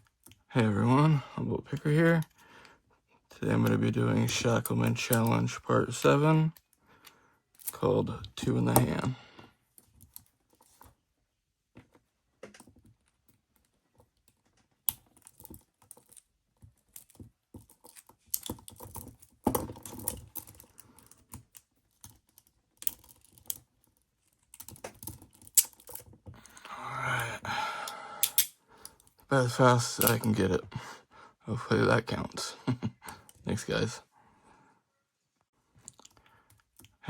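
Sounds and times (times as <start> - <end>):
handcuffs rattling: 7.5 - 7.8, 14.3 - 26.7, 27.8 - 29.3, 30.0 - 30.4
metallic clicks of lock picking: 7.5 - 7.8, 16.9 - 19.1, 24.5 - 26.6, 28.2 - 29.1.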